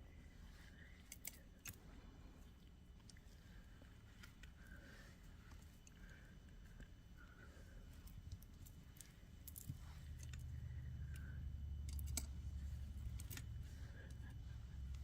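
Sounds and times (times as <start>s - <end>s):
beads and tools clicking: 8.1s - 14.2s.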